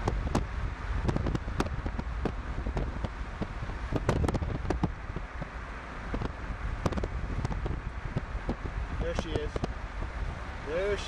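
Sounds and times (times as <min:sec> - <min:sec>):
sharp ticks and knocks against car: 0:00.0 - 0:08.7, 0:09.4 - 0:09.8
car road and wind rumble: 0:00.0 - 0:11.0.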